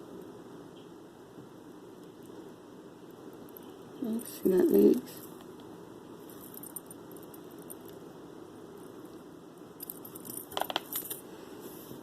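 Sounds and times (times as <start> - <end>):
faint room noise: 0.0 - 12.0
metal chain clinking: 6.2 - 8.0, 9.8 - 11.2.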